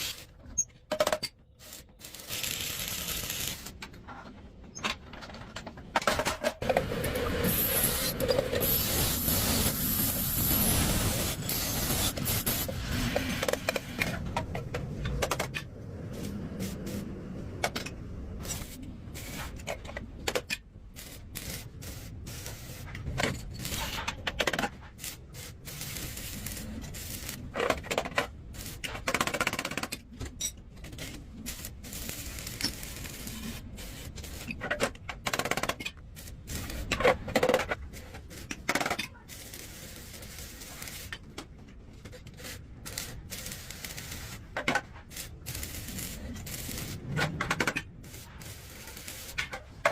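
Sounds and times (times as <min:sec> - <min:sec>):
clacks and knocks of parts and tools: 0:00.4 - 0:01.5, 0:03.8 - 0:07.0, 0:13.0 - 0:15.7, 0:19.4 - 0:20.8, 0:22.9 - 0:25.0, 0:27.5 - 0:31.3, 0:34.5 - 0:39.3, 0:49.3 - 0:49.9.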